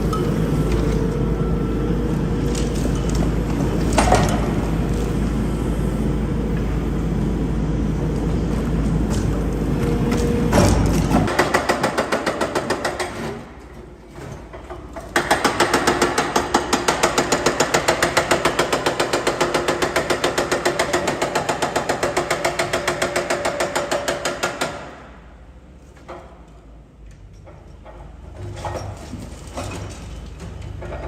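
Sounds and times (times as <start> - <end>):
concrete breaker hammering: 10.5 - 13.5, 15.0 - 25.1.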